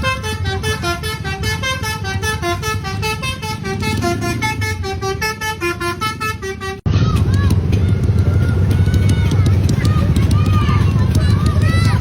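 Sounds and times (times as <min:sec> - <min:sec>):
multi-tone bus air horn jingle: 0:00.0 - 0:06.9
bus engine rumble: 0:00.0 - 0:12.0.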